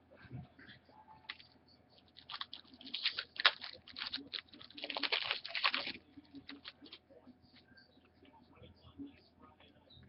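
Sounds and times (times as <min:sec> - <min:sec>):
card packs crinkling and rustling: 0:02.0 - 0:07.0.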